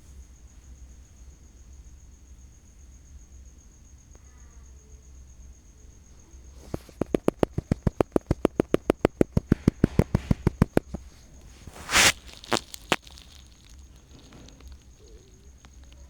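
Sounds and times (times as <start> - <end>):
short hiss: 6.6 - 15.3
rapid sharp clicks: 6.6 - 16.0.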